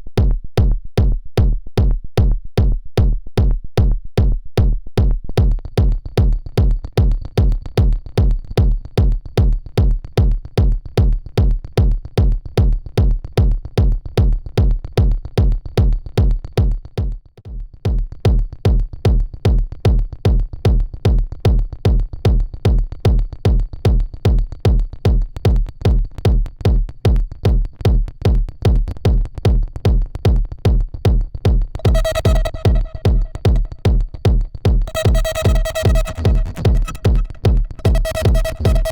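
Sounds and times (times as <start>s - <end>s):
electronic kick drum: 0.0s - 38.9s
pitched synth tone: 31.8s - 33.9s, 34.9s - 38.9s.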